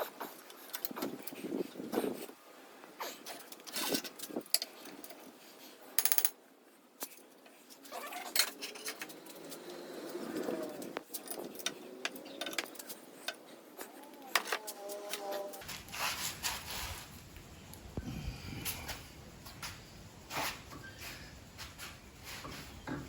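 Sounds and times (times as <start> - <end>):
rapid ratcheting rattle: 6.0 - 6.3.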